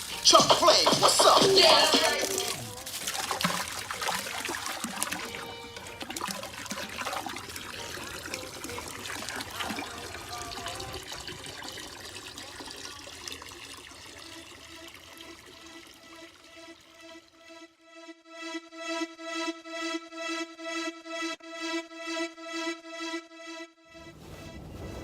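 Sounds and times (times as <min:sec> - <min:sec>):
music: 0:00.0 - 0:12.5, 0:14.1 - 0:25.0
rushing gurgling water: 0:00.0 - 0:17.0.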